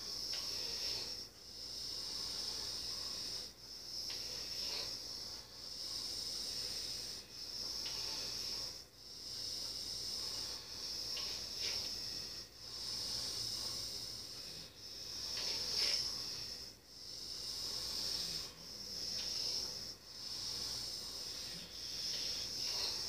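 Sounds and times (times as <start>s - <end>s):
sleeper breathing: 0.0s - 23.0s.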